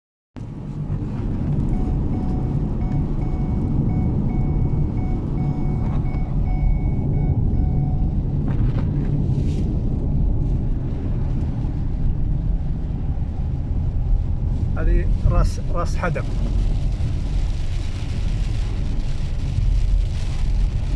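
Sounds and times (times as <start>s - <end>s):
vehicle road and engine rumble: 0.4s - 20.9s.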